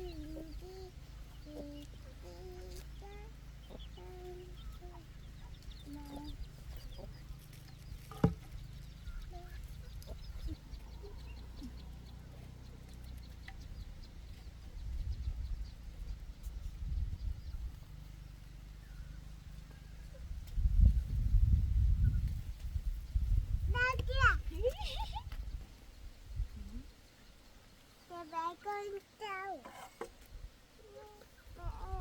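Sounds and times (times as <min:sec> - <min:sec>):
chickens clucking: 0:00.0 - 0:20.7
steady low rumble: 0:00.0 - 0:23.8.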